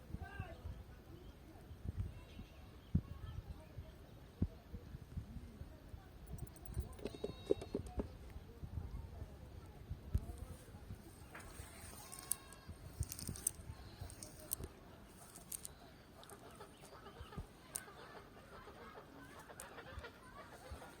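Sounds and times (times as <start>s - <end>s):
small clicks: 6.3s - 8.1s, 11.1s - 18.0s.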